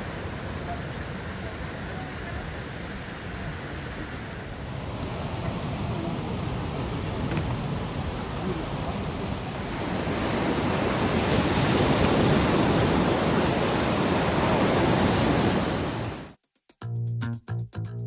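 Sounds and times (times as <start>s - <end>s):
sea surf rushing: 0.0s - 16.3s.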